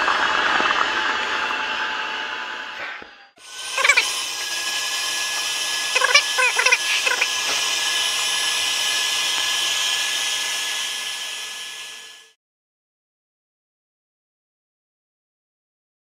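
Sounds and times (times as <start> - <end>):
vacuum motor high whine: 0.0 - 12.4
short squeaky chirps: 6.0 - 7.3.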